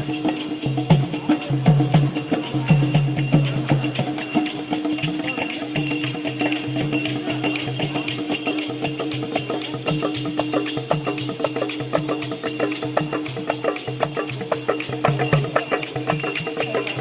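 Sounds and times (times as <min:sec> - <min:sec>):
fast drumming: 0:00.0 - 0:17.0
jingling tambourine-like percussion: 0:00.0 - 0:17.0.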